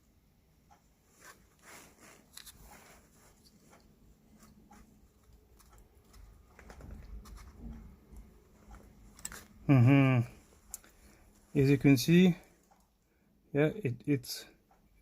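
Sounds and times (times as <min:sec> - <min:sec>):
plastic parts clicking and rustling: 0:04.4 - 0:09.6.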